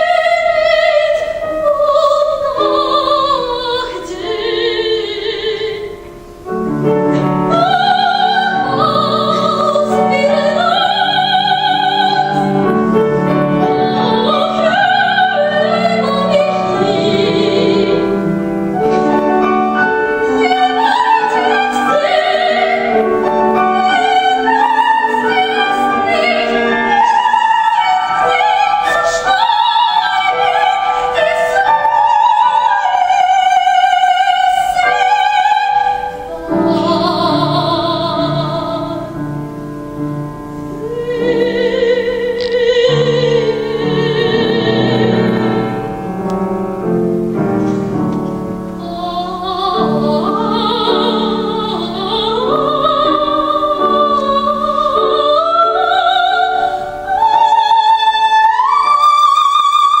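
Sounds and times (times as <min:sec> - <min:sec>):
operatic soprano singing: 0:00.0 - 1:00.0
piano accompaniment: 0:00.0 - 1:00.0.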